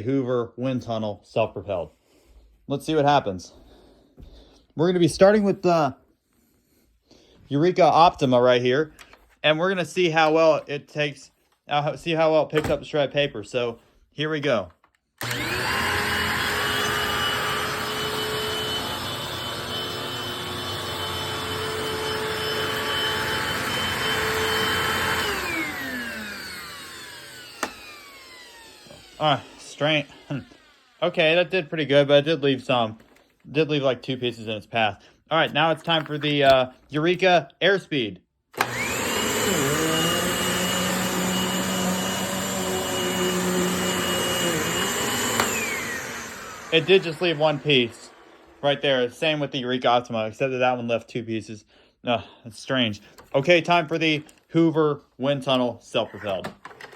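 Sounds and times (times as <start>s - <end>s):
vacuum motor spinning down: 15.2s - 31.0s, 38.6s - 48.8s
vacuum cleaner motor whine: 15.2s - 31.1s, 38.6s - 48.9s.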